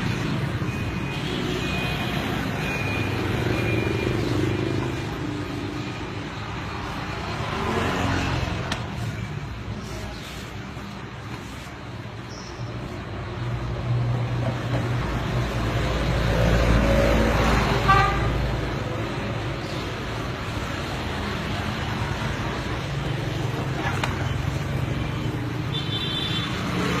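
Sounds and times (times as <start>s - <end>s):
car horn toot: 17.9s - 18.4s.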